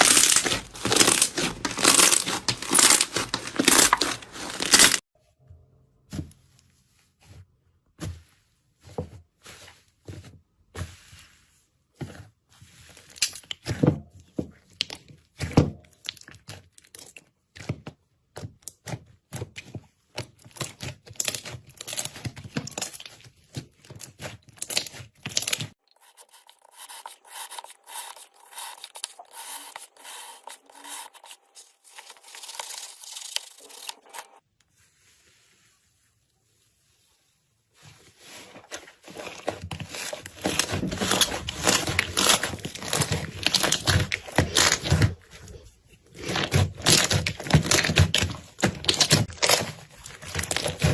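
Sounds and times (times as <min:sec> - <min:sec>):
slime crackling and popping: 0:00.0 - 0:05.0.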